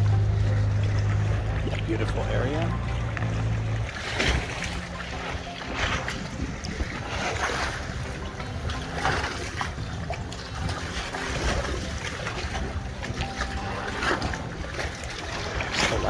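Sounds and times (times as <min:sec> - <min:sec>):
paddle strokes splashing water: 0:00.0 - 0:16.0
wind rumbling on microphone: 0:00.0 - 0:16.0.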